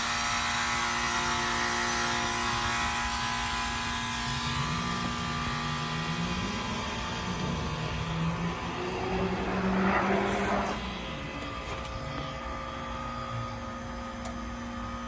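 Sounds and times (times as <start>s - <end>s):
fan whirring: 0.0s - 15.0s
heat pump humming: 0.0s - 15.0s
low tone rising in pitch: 2.4s - 14.0s.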